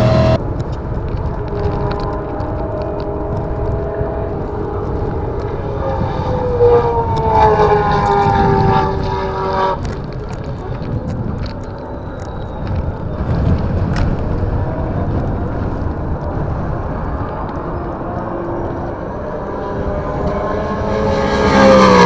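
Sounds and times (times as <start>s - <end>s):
racing car engine passing: 0.0s - 10.1s, 14.8s - 22.0s
low rumbling noise: 0.0s - 22.0s.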